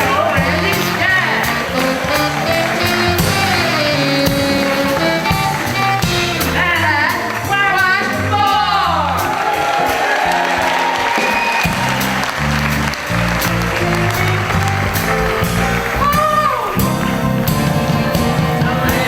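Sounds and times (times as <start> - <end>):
live band music: 0.0 - 19.0
person singing: 17.8 - 19.0.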